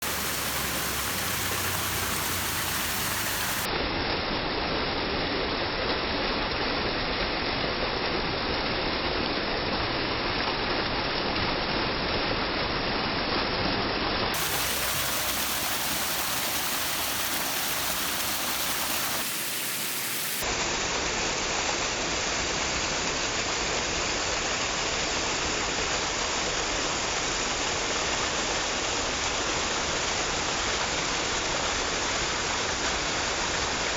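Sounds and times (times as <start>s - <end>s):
waterfall splashing: 0.0s - 3.7s, 14.4s - 20.4s.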